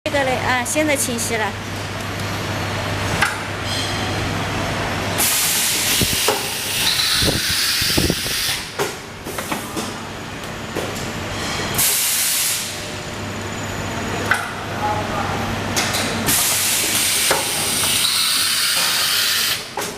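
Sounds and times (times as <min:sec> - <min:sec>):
air hiss bursts: 0:11.8 - 0:12.8.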